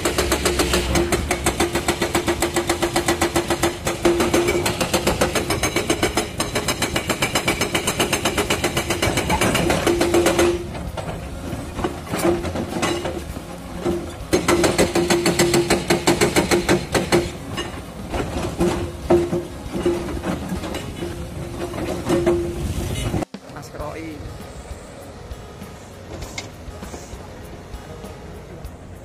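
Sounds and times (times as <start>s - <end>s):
hydraulic breaker hammering rock: 0.0s - 10.8s, 13.9s - 20.7s.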